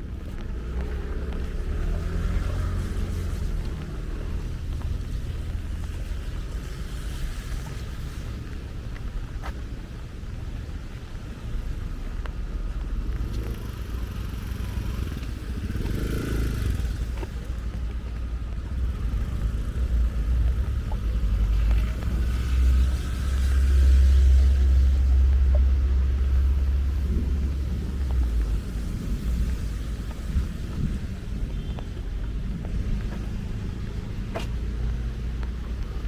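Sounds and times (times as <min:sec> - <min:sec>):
heavy rain on street: 0:00.1 - 0:36.0
deep low thunder rumble: 0:18.8 - 0:33.8.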